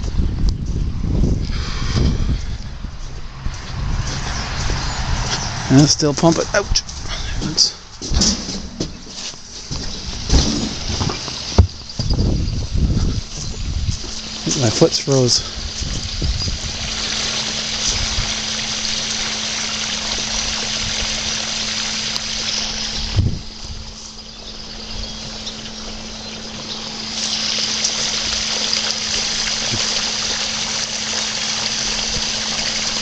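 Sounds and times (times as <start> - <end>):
water pump humming: 8.7 - 33.0
water rushing and trickling: 9.3 - 33.0
low thud: 9.7 - 12.4.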